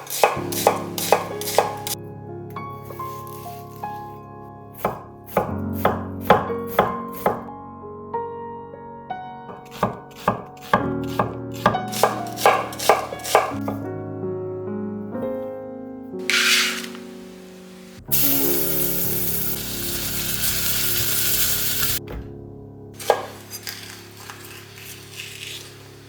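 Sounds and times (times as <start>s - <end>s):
knife chopping on cutting board: 0.0s - 2.0s, 4.8s - 7.5s, 9.5s - 13.9s, 23.0s - 25.6s
soft background music: 0.2s - 25.6s.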